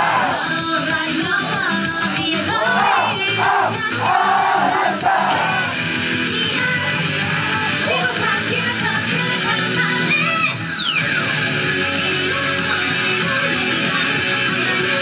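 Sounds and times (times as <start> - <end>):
person singing and shouting: 0.0 - 0.5, 2.4 - 5.7, 6.7 - 8.9
rock pop song: 0.0 - 15.0.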